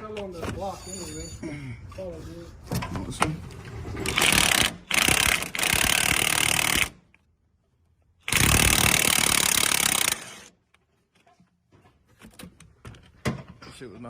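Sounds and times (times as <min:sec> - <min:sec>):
impact wrench hammering: 0:08.3 - 0:10.5.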